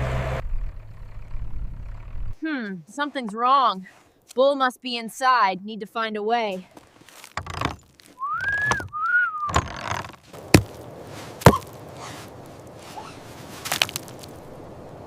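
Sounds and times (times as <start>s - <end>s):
high squeaky gliding calls: 11.9s - 13.3s.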